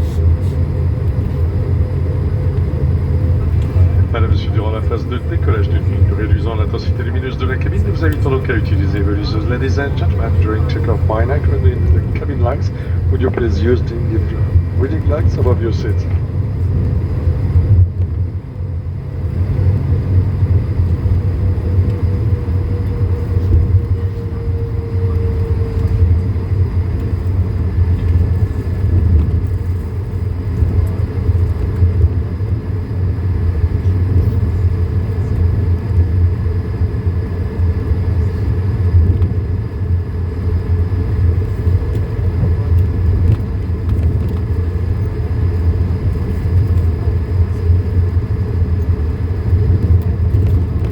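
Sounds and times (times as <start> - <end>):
faint whine: 0.0 - 50.9
jet engines low rumble: 0.0 - 50.9.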